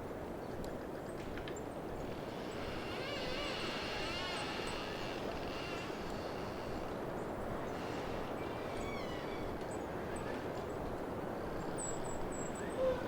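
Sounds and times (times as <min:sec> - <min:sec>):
wind through pine trees: 0:00.0 - 0:13.0
tree trunk creaking: 0:02.0 - 0:10.7.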